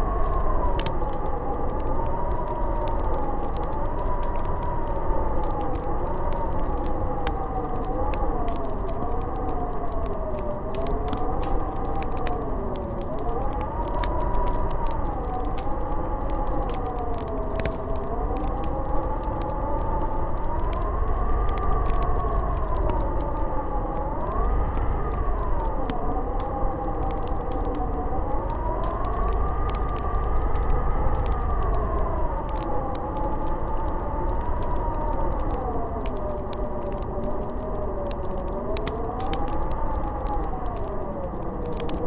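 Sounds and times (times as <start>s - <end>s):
snowstorm wind howling: 0.0s - 42.0s.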